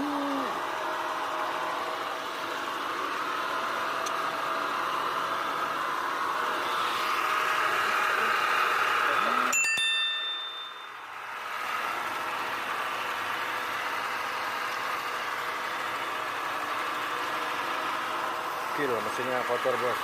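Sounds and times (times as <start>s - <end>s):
car engine idling: 10.4s - 20.0s.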